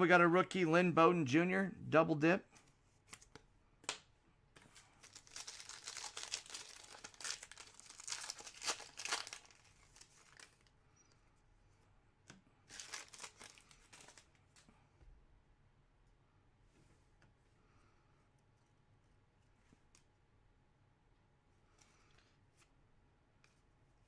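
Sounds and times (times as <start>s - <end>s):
card pack wrapper tearing and crinkling: 5.0s - 10.7s, 12.7s - 14.3s.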